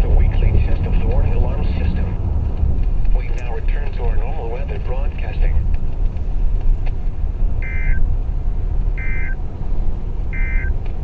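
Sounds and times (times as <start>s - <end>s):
car driving rumble: 0.0s - 11.0s
warbling data chirps from radio: 7.6s - 8.0s, 9.0s - 9.4s, 10.4s - 10.7s.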